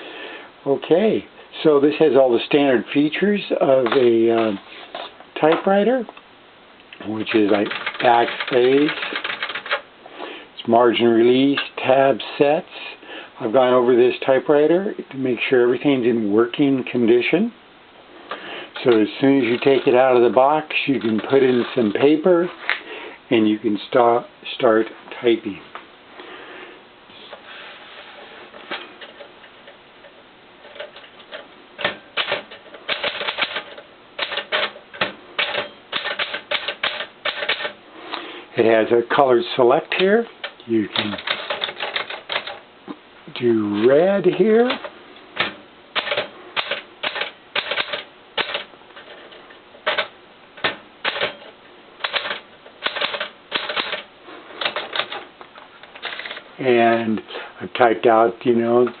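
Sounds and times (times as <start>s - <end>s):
typewriter key strikes: 7.6s - 9.8s, 30.7s - 37.8s, 41.0s - 42.6s, 44.7s - 48.7s, 49.8s - 55.2s.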